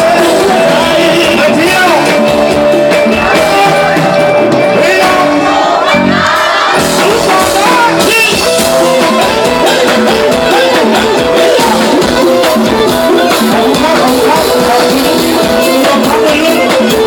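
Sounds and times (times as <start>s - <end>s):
person singing: 0.0s - 2.3s, 6.8s - 17.0s
crowd voices: 0.0s - 17.0s
live band dance music: 0.0s - 17.0s.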